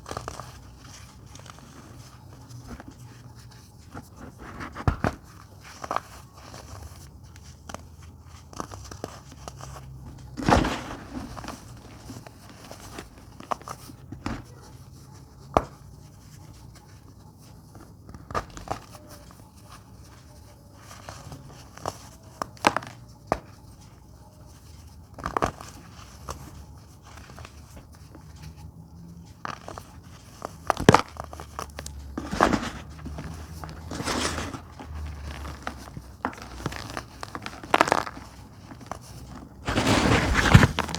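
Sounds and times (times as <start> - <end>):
baking soda crunching: 29.4 - 40.9.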